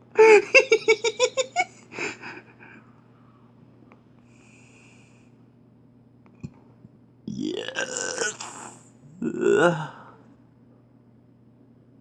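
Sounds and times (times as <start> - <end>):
man laughing: 0.2 - 2.5.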